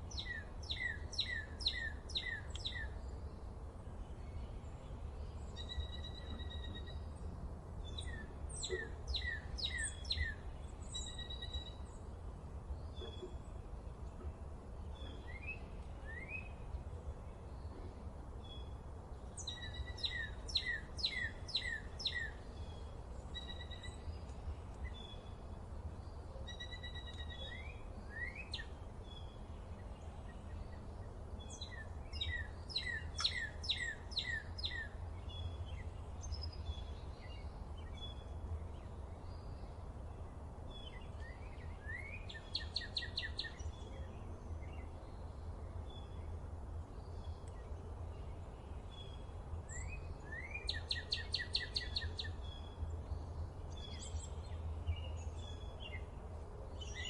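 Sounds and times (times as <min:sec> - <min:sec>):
birds chirping: 0:12.8 - 0:46.3.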